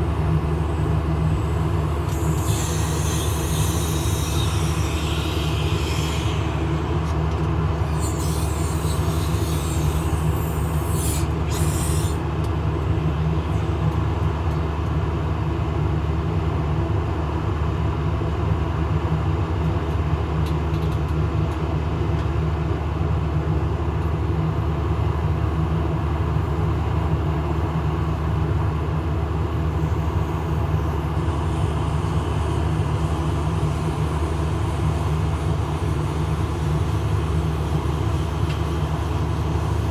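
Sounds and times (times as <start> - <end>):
sprayer engine running: 0.0 - 12.2, 29.5 - 39.9.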